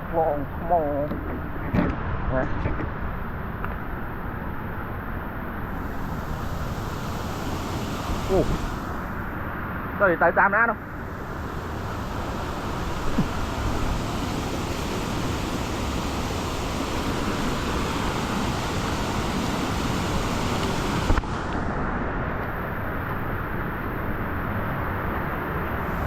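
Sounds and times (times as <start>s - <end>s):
waterfall rushing: 5.7s - 21.3s.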